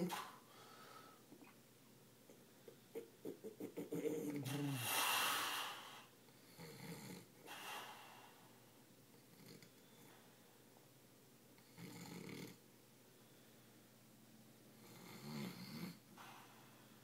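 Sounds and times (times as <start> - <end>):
man snoring: 3.9 - 6.0
hissing breath out: 4.4 - 6.1.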